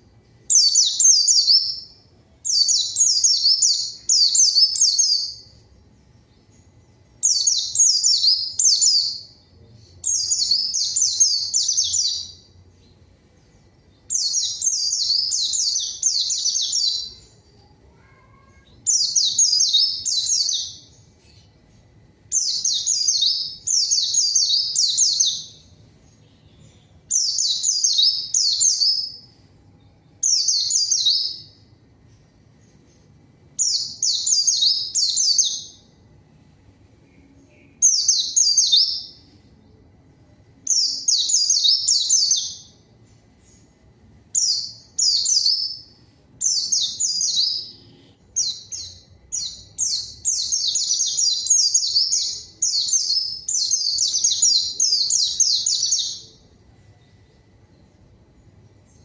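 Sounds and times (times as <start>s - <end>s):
bird singing high chattering notes: 0.5s - 17.5s, 18.7s - 21.5s, 22.3s - 29.4s, 44.4s - 56.4s.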